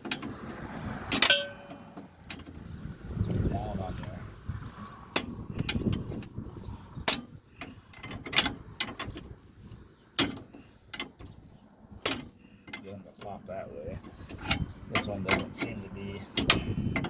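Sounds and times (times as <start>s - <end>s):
hammer and chisel on metal: 1.1s - 2.5s, 5.1s - 6.1s, 7.0s - 7.4s, 10.2s - 11.2s, 14.0s - 17.0s.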